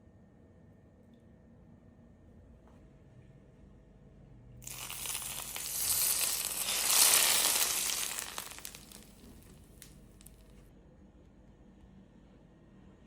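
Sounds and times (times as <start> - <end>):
hot fat sizzling: 4.6 - 10.3.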